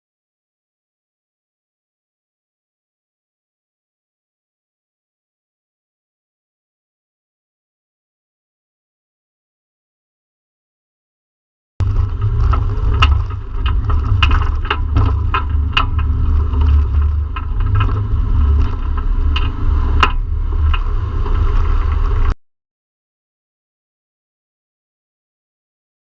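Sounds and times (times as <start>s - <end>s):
sharp knocks and clatters: 11.8s - 22.4s
vehicle low rumble: 11.8s - 22.4s.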